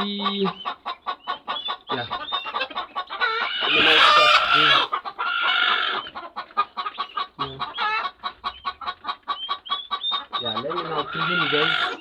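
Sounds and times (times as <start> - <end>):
chickens clucking: 0.0 - 12.0
harsh chicken call: 0.1 - 12.0.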